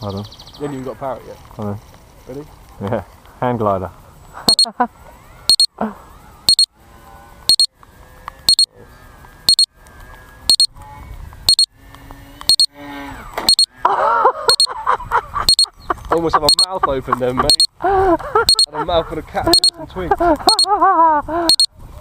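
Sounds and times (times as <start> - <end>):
faint background noise: 0.0 - 22.0
electronic double beep: 4.5 - 4.7, 5.5 - 5.8, 6.5 - 6.7, 7.5 - 7.7, 8.5 - 8.7, 9.5 - 9.7, 10.5 - 10.7, 11.5 - 11.7, 12.5 - 12.7, 13.5 - 13.7, 14.5 - 14.7, 15.5 - 15.7, 16.4 - 16.7, 17.5 - 17.7, 18.5 - 18.7, 19.5 - 19.8, 20.5 - 20.7, 21.5 - 21.7.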